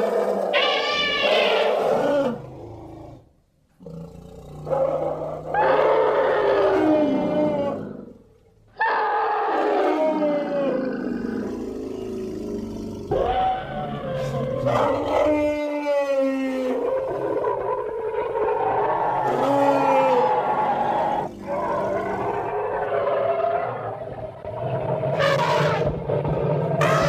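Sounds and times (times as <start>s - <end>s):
loud animal calls sliding down: 0.5s - 1.9s.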